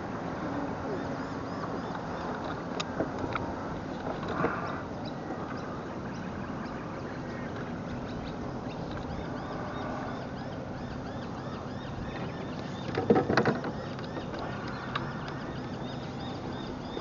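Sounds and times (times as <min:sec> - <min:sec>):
wind: 0:00.0 - 0:17.0
birds chirping rapidly: 0:03.7 - 0:17.0.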